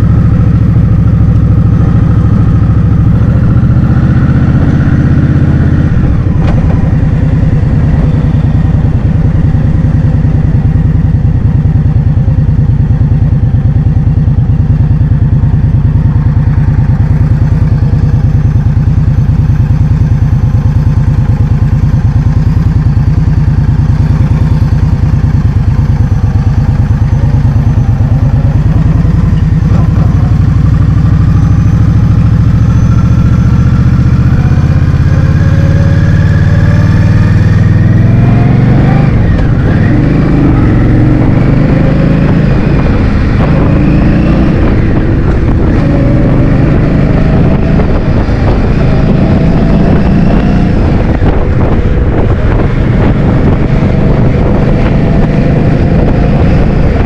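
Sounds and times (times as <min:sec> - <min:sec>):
scooter engine running: 0:00.0 - 0:57.0
wind buffeting microphone: 0:36.8 - 0:57.0.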